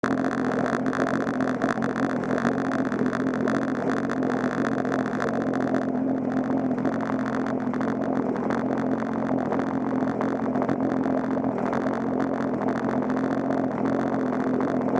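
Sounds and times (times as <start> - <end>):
vehicle engine running: 0.0 - 14.9.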